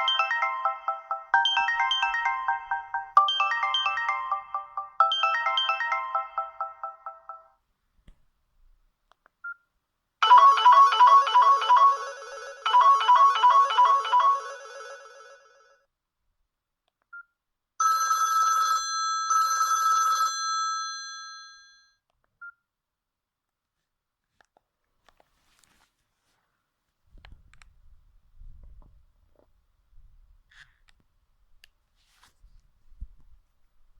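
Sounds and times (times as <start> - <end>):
electronic telephone ring: 0.0 - 7.5, 10.2 - 15.8, 17.8 - 21.9
melodic phone ringtone: 0.0 - 7.6, 10.2 - 15.8, 17.8 - 21.8.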